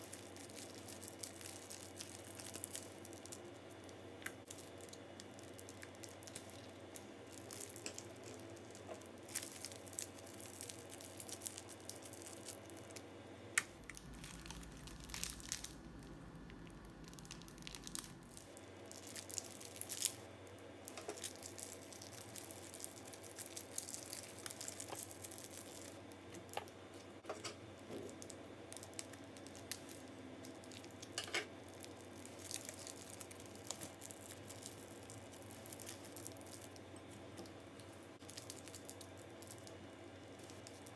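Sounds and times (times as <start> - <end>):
crunchy slime squished by hand: 0.0 - 26.8, 27.7 - 40.9
low hum: 12.9 - 19.0.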